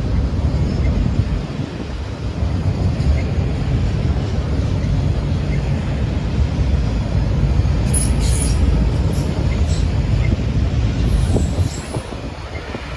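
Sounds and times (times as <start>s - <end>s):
freight train rumbling on rails: 0.0s - 12.9s
high wheel squeals: 7.9s - 9.9s, 11.1s - 12.8s.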